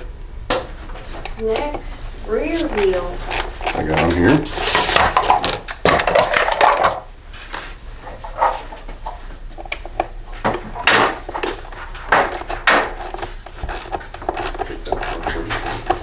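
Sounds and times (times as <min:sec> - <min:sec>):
scraping rasps: 0:01.5 - 0:06.6, 0:11.4 - 0:16.0
metal tools clinking: 0:12.1 - 0:16.0.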